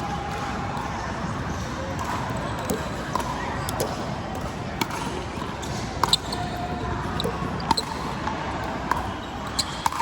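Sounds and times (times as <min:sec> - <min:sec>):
din of hall full of play: 0:00.0 - 0:10.0
ball bouncing on court: 0:01.6 - 0:10.0.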